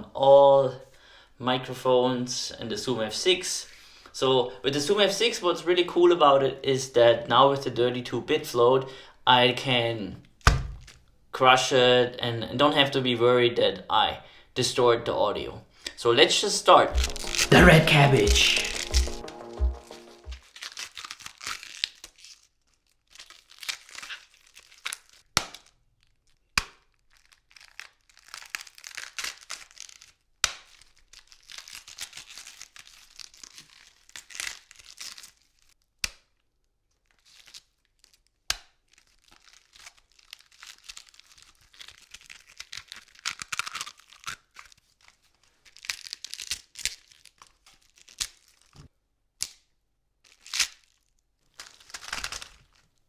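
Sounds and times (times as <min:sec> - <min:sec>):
cabbage leaves crackling and crunching: 0:17.0 - 0:19.2, 0:20.4 - 0:25.2, 0:27.1 - 0:30.1, 0:30.8 - 0:35.6, 0:38.9 - 0:44.8, 0:50.3 - 0:52.9.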